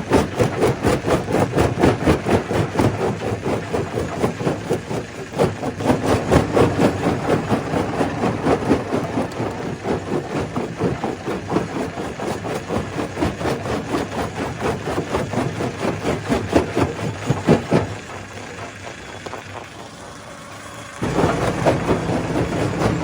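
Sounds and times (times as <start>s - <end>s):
stone crusher running: 5.4s - 14.1s, 19.4s - 23.0s.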